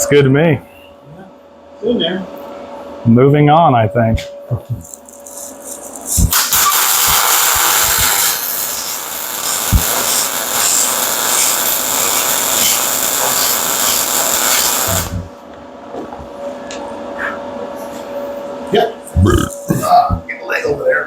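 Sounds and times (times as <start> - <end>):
electric welder crackling hiss: 4.7 - 15.3.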